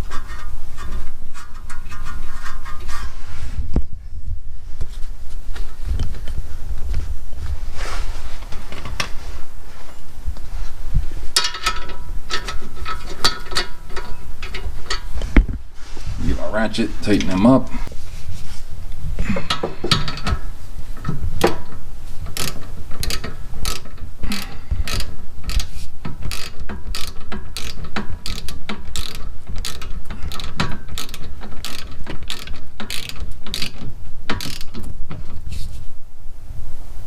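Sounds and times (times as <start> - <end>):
hand ratchet clicking: 19.5 - 35.3.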